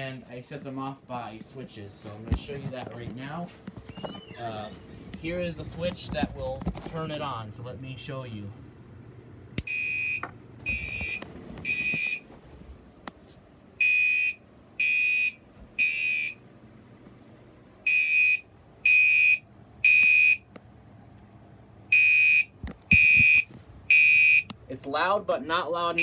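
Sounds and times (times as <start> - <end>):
fire alarm buzzing tone: 9.6 - 12.3, 13.8 - 16.4, 17.8 - 20.5, 21.9 - 24.5.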